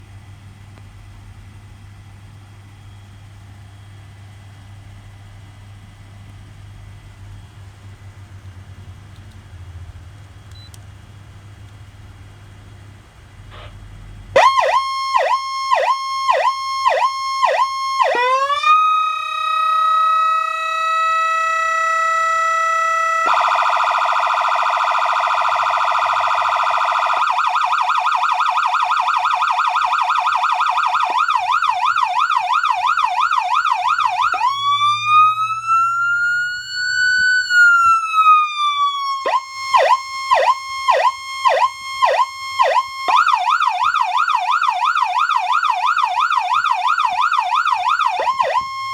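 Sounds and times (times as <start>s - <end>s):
electronic siren cycling tones: 14.4s - 48.9s.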